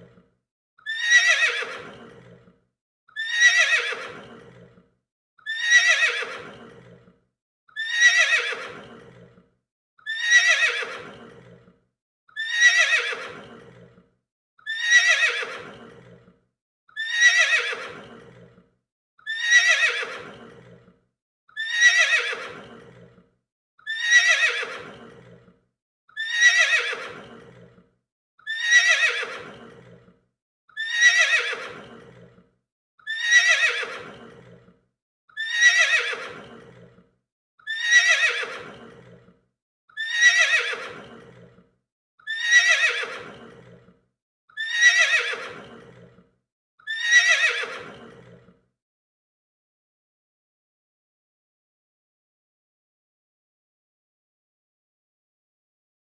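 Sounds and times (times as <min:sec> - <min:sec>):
horse neighing: 0:00.9 - 0:02.5, 0:03.2 - 0:04.7, 0:05.5 - 0:07.1, 0:07.8 - 0:09.4, 0:10.1 - 0:11.6, 0:12.4 - 0:14.0, 0:14.7 - 0:16.2, 0:17.0 - 0:18.6, 0:19.3 - 0:20.8, 0:21.7 - 0:23.1, 0:23.9 - 0:25.4, 0:26.3 - 0:27.7, 0:28.5 - 0:30.1, 0:30.8 - 0:32.4, 0:33.1 - 0:34.6, 0:35.4 - 0:37.0, 0:37.7 - 0:39.2, 0:40.0 - 0:41.6, 0:42.3 - 0:43.8, 0:44.6 - 0:46.2, 0:46.9 - 0:48.4.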